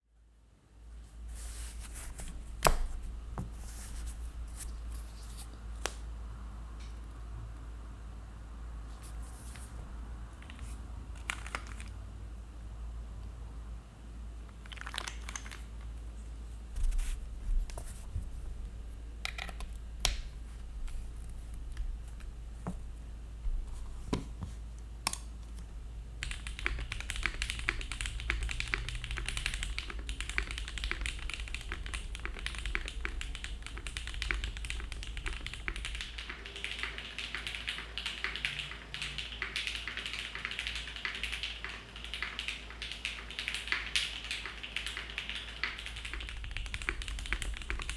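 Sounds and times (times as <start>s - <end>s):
mechanical keyboard typing: 10.4s - 12.0s, 14.5s - 15.9s, 19.2s - 22.8s, 26.2s - 47.9s.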